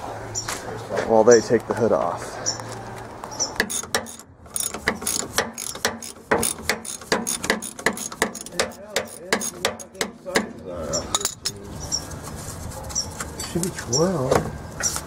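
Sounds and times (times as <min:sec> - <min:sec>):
ratchet wrench clicking: 0:03.6 - 0:09.6.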